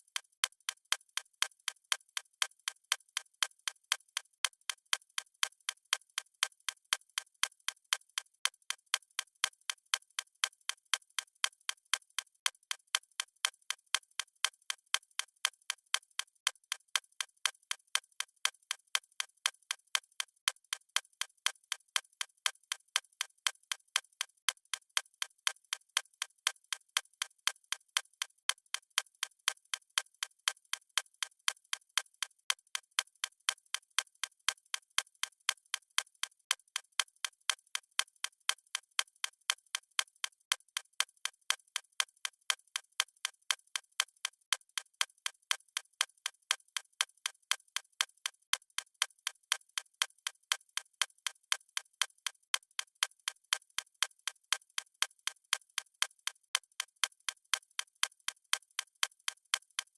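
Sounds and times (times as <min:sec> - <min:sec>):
watch ticking: 0:30.2 - 0:59.9.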